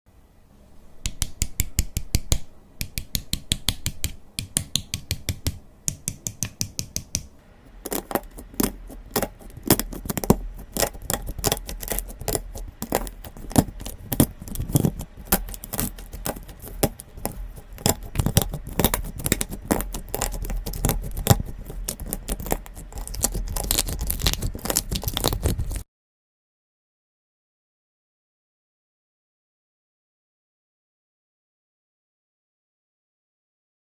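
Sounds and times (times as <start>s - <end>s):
slime squishing with sticky clicks: 1.6s - 25.8s.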